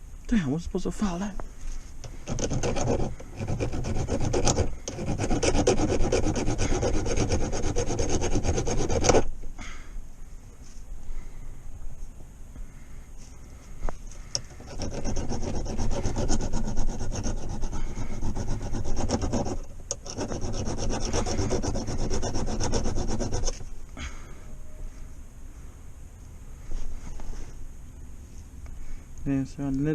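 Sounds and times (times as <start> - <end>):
file rasping on metal: 2.2 - 9.3, 14.6 - 23.6.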